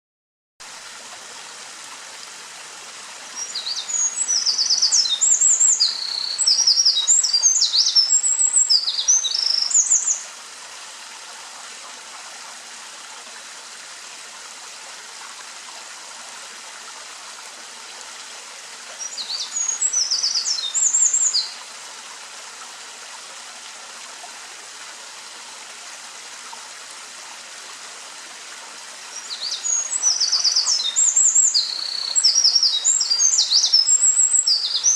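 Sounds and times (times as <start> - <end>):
bird trilling song: 3.4 - 10.2, 29.2 - 34.9.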